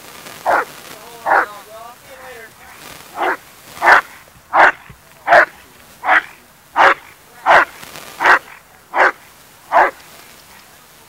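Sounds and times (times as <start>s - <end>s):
dog barking: 0.4s - 1.6s, 3.2s - 10.0s.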